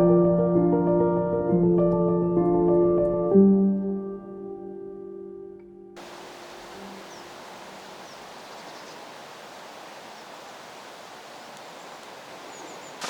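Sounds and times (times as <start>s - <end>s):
river water running: 6.0s - 13.0s.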